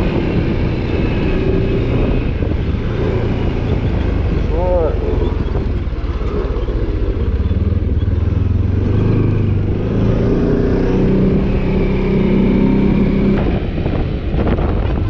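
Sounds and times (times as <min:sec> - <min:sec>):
atv engine revving: 0:00.0 - 0:15.0.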